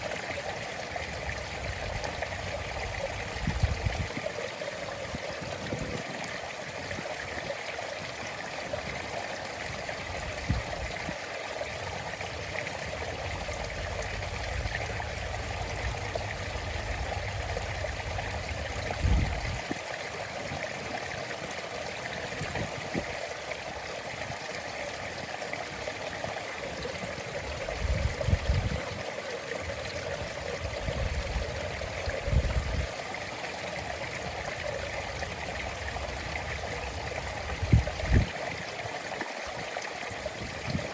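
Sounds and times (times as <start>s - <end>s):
running water rushing: 0.0s - 40.9s.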